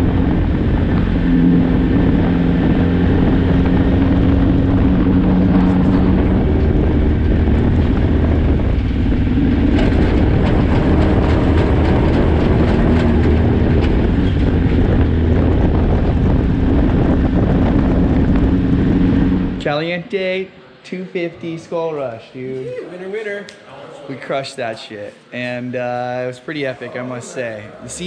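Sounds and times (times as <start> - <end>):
race car engine running: 0.0 - 19.6.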